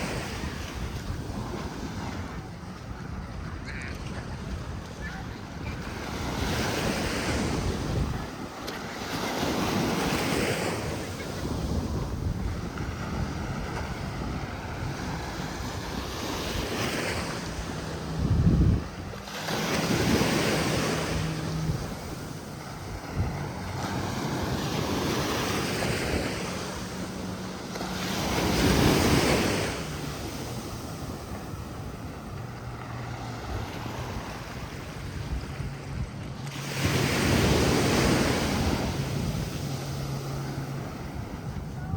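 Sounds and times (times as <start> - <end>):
sea waves breaking on beach: 0.0 - 41.9
wind buffeting microphone: 0.0 - 41.9.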